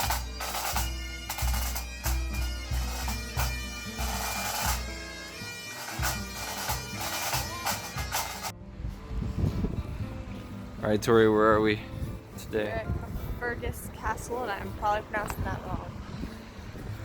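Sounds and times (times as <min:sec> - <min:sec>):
bagpipes with drones: 0:00.0 - 0:08.5
drums beating: 0:00.0 - 0:08.5.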